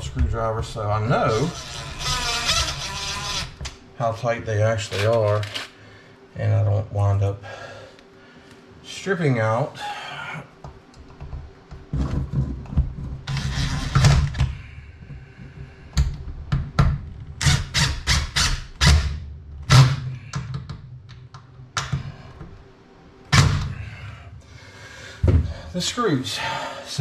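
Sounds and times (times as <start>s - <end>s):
knocks and clunks of wood and tools: 10.6s - 17.2s, 25.2s - 25.6s.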